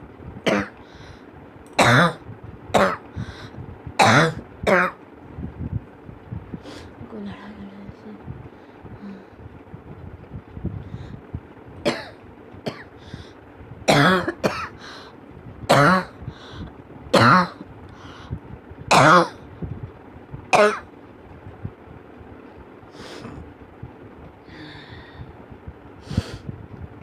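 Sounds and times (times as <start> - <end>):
person coughing: 0.5 - 0.8, 2.8 - 3.0, 11.9 - 12.9, 13.9 - 14.8, 15.7 - 16.2, 17.2 - 17.6, 20.6 - 20.8.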